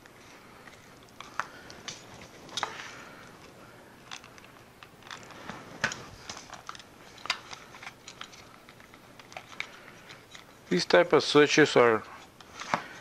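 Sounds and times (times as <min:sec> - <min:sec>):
small parts clicking and tapping: 0:04.0 - 0:10.5.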